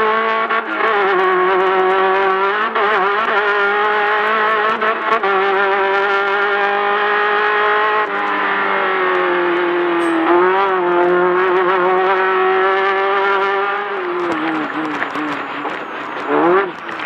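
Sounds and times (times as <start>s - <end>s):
race car engine revving: 5.6s - 17.0s.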